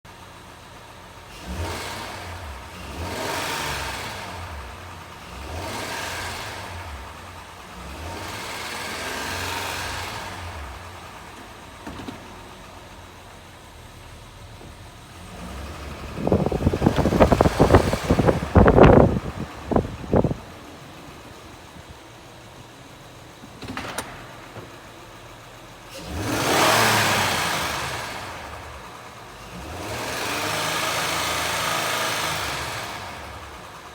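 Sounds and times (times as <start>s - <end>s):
car engine revving: 1.1s - 33.9s
loud rattling thumps: 15.4s - 20.6s.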